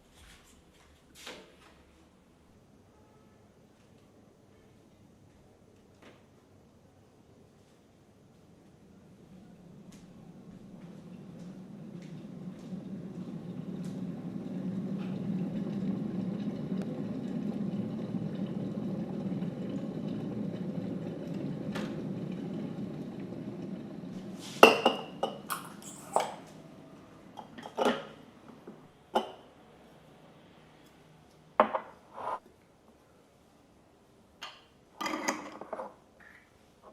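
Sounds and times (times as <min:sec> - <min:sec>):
kitchenware clinking and knocking: 0:24.6 - 0:26.4.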